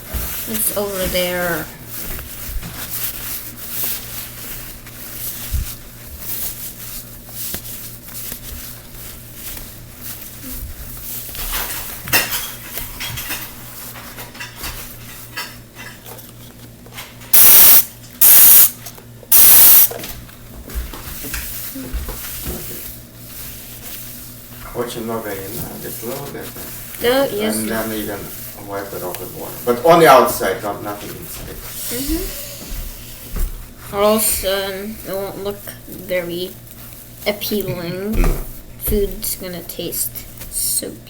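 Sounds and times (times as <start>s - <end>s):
scrubbing while cleaning: 0.0s - 16.8s, 19.5s - 40.9s
spray bottle spraying: 17.4s - 18.7s, 19.3s - 19.9s.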